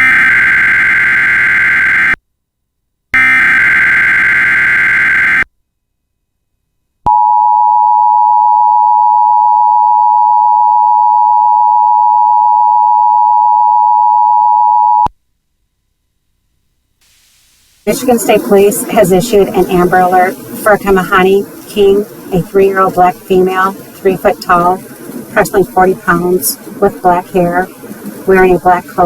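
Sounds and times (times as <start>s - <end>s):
harsh digital data bursts: 3.2s - 5.4s
steady attention tone: 17.9s - 29.0s.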